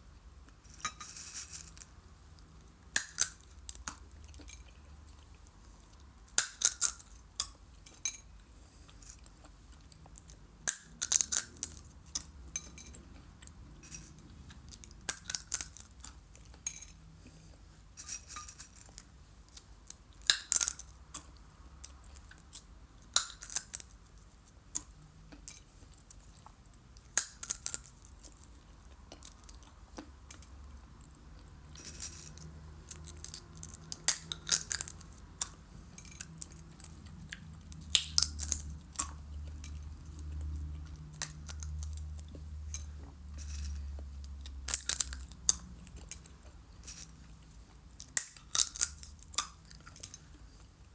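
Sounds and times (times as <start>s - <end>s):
seeds cracked between teeth: 2.9s - 4.0s.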